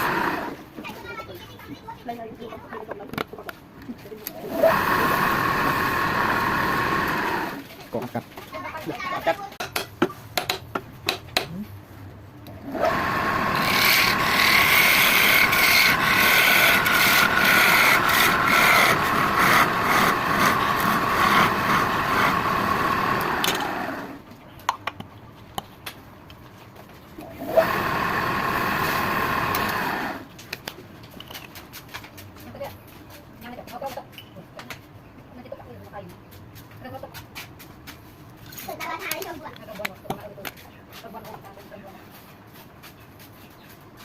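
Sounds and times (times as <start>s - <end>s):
steady whine: 12.4s - 24.2s, 27.2s - 30.3s
tool rasping against wood: 12.8s - 23.2s.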